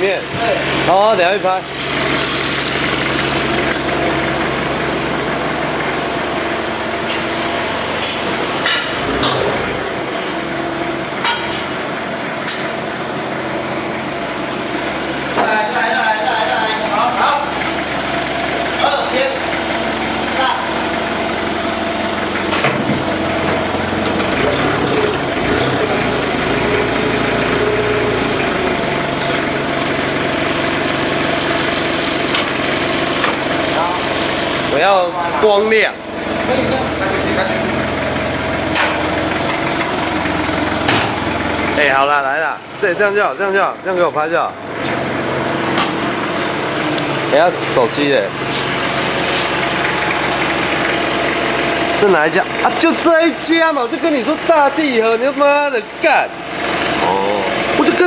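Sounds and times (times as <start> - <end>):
machinery humming: 0.0 - 54.5.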